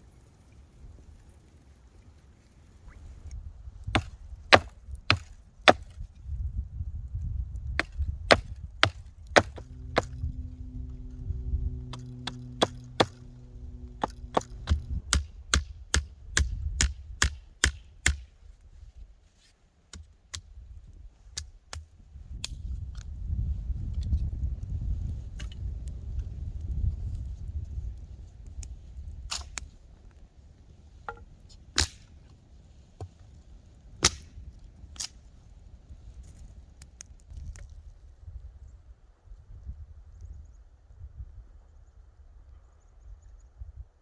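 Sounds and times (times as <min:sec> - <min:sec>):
axe chopping wood: 0:03.9 - 0:06.1, 0:07.8 - 0:10.2, 0:11.9 - 0:13.3, 0:13.9 - 0:18.3, 0:31.8 - 0:32.1, 0:34.0 - 0:34.3
low steady hum: 0:07.4 - 0:18.4.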